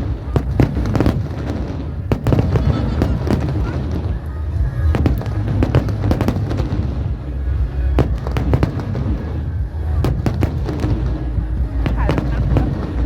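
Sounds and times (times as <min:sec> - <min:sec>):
fireworks bangs and crackles: 0:00.0 - 0:13.0
low rumble: 0:00.0 - 0:13.0.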